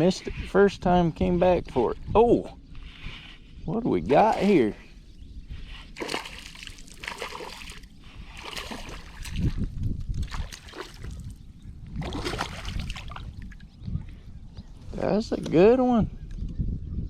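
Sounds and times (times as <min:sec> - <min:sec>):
wind rumble on microphone: 0:00.0 - 0:17.0
fish splashing in water: 0:06.0 - 0:09.6, 0:10.2 - 0:11.3, 0:12.0 - 0:13.4.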